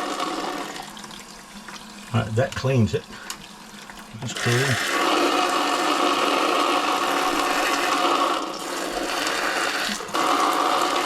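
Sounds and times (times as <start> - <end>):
water spraying into toilet bowl: 3.1 - 11.0.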